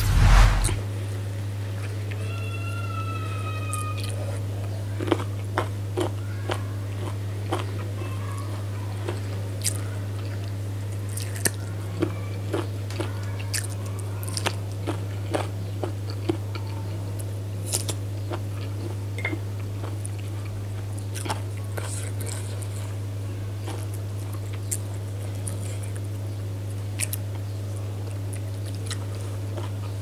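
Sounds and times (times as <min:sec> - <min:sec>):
steady low hum: 0:00.0 - 0:02.2
person chewing food: 0:04.0 - 0:16.9, 0:17.6 - 0:23.0, 0:28.1 - 0:30.0.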